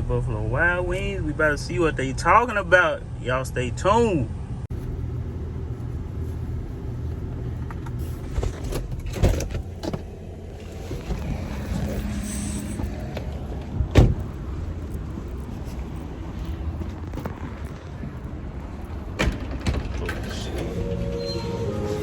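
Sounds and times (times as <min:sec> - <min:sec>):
car air conditioning hum: 0:03.9 - 0:19.2
car engine idling: 0:04.7 - 0:21.9.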